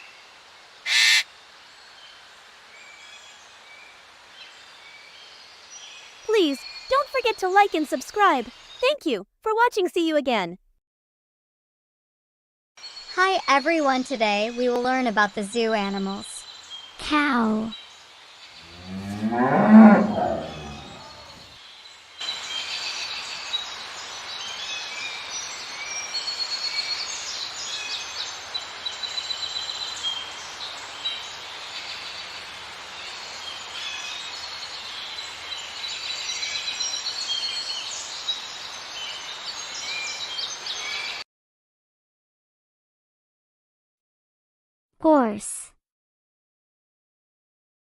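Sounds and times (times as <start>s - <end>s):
steady outdoor hiss: 0.0s - 8.8s, 12.8s - 41.2s
small birds chirping: 0.9s - 1.2s, 15.8s - 21.5s
cow mooing: 18.6s - 21.4s.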